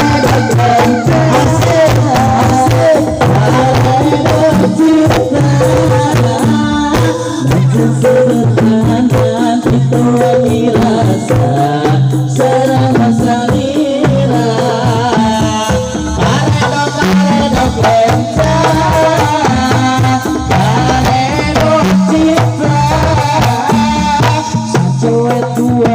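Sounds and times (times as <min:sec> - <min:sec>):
frame drums and jingles: 0:00.0 - 0:25.9
melody over drums: 0:00.0 - 0:25.9.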